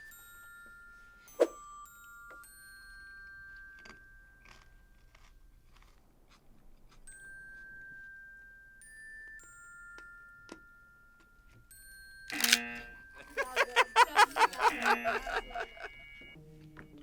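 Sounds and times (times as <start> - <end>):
soft chime music: 0.0 - 4.4, 7.1 - 16.4
chewing raw vegetables: 3.8 - 7.0.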